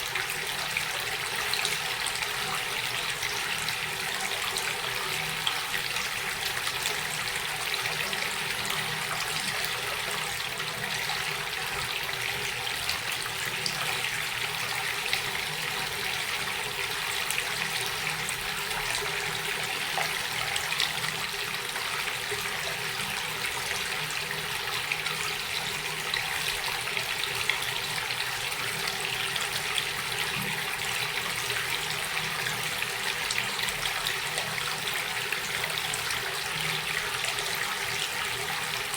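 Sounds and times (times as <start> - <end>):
water running and splashing: 0.0 - 38.9.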